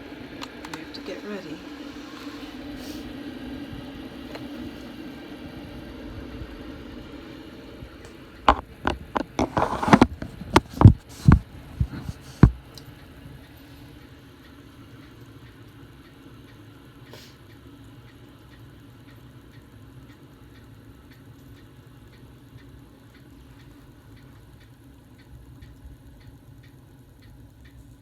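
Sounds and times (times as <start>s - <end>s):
espresso machine humming: 0.0s - 16.3s
espresso machine pops and spits: 8.5s - 12.5s.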